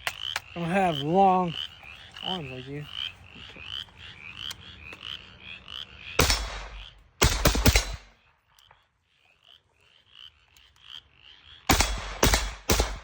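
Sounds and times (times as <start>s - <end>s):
frogs chirping: 0.0s - 13.0s
rifle shots: 6.2s - 8.2s, 11.7s - 13.0s.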